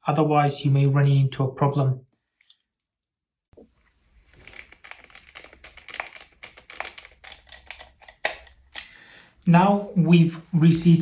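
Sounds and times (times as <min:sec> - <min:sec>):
screwdriver clicks and ticks: 0:07.2 - 0:08.9.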